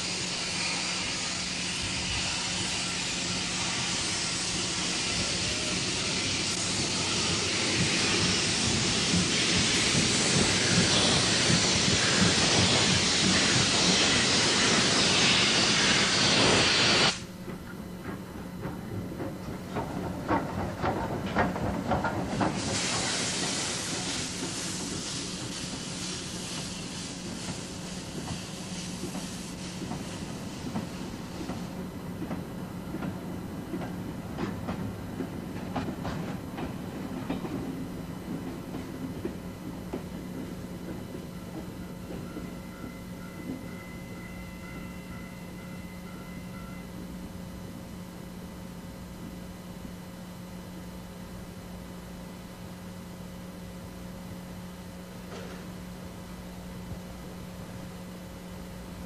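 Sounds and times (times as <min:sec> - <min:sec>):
steam locomotive venting steam: 0:00.0 - 0:17.4, 0:18.8 - 0:46.3
train wheels clicking over rail joints: 0:06.5 - 0:45.5, 0:55.2 - 0:55.8.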